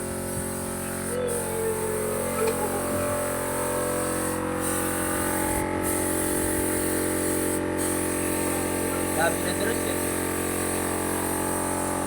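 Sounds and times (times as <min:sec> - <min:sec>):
air compressor running: 0:00.0 - 0:12.0
paint spray gun hissing: 0:00.0 - 0:12.0.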